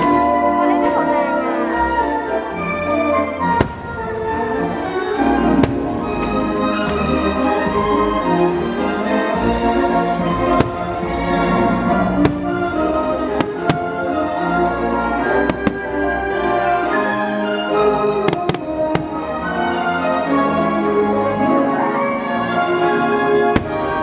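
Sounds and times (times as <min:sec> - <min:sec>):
orchestral music over loudspeakers: 0:00.0 - 0:24.0
firework shells bursting: 0:05.4 - 0:06.4, 0:10.5 - 0:14.3, 0:15.4 - 0:16.2, 0:23.5 - 0:24.0.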